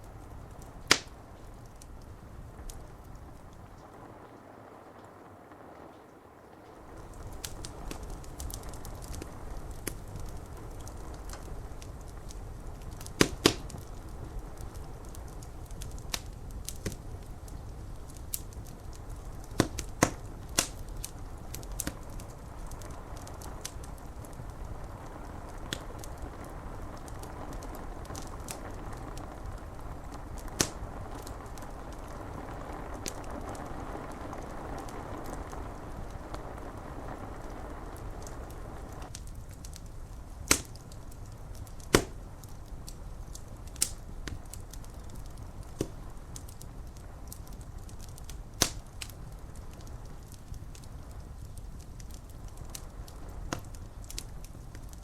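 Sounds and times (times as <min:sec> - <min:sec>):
rain hiss: 0:00.0 - 0:55.0
wood fire crackling and popping: 0:00.0 - 0:55.0.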